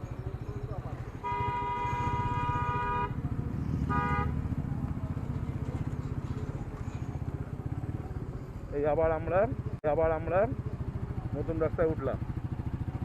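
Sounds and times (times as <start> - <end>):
motorcycle engine running: 0.0 - 13.0
vehicle horn honking: 1.2 - 3.2, 3.8 - 4.6.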